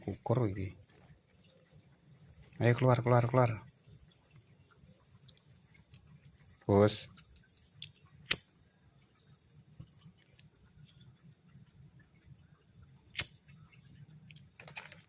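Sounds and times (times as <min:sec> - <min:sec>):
high-pitched insect trill: 0:00.0 - 0:14.6
sharp clicks: 0:05.2 - 0:08.5, 0:13.1 - 0:13.6.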